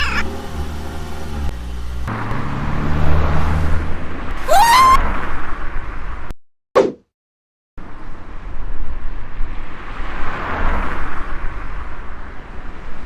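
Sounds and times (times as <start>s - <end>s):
short falling swish: 6.8s - 7.0s.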